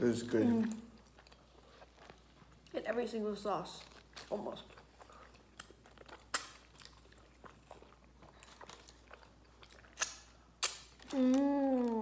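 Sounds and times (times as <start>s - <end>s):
wet chewing: 0.5s - 12.0s
person humming: 11.1s - 12.0s.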